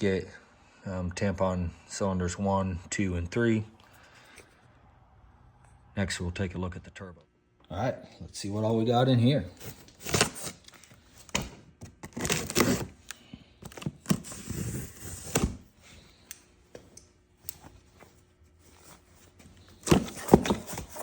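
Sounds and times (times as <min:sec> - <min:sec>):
packing material rustling: 0:12.0 - 0:15.6, 0:17.6 - 0:21.0
cardboard box thunks and scrapes: 0:19.7 - 0:21.0.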